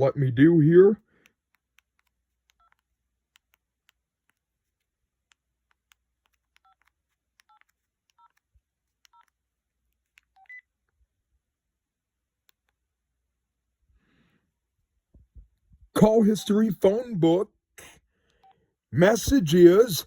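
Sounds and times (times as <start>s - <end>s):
keypad clicks: 1.2s - 4.4s, 5.2s - 9.4s.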